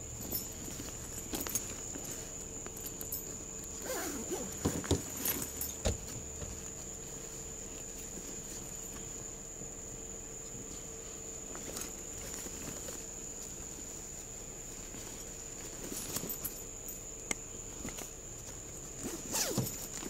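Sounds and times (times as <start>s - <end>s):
camera handling knocks and rustles: 4.6s - 6.7s.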